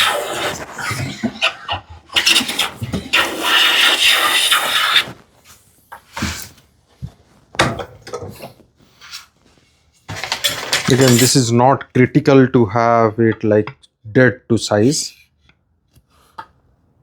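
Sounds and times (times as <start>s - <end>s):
hand plane strokes on wood: 0.0s - 5.2s.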